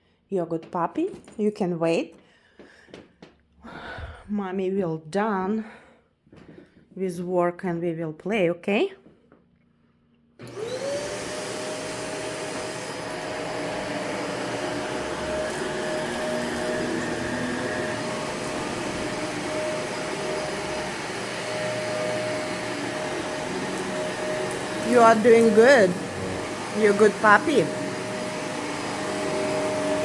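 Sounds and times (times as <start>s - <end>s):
vacuum cleaner motor whine: 10.4s - 30.0s.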